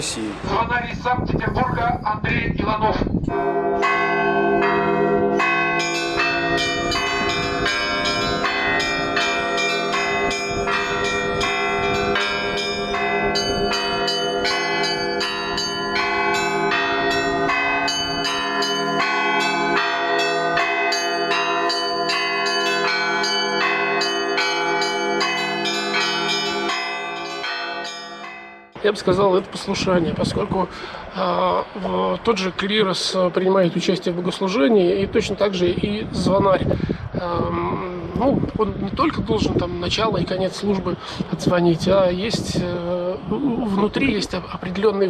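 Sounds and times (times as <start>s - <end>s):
hum of larger bells: 3.2s - 29.5s
small high bells struck rapidly: 3.8s - 28.7s.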